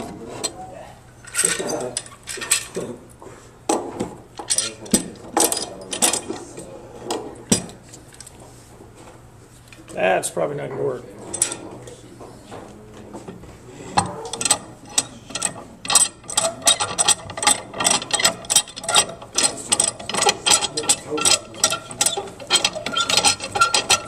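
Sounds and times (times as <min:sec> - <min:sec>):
metal clamp clicking and rattling: 0:14.3 - 0:24.0.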